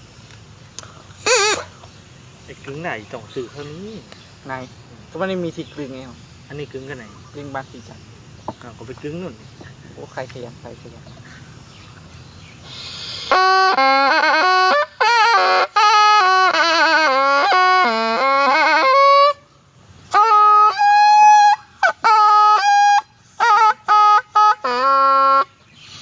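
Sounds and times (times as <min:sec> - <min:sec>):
reed oboe melody: 0:01.2 - 0:01.8, 0:13.1 - 0:25.9.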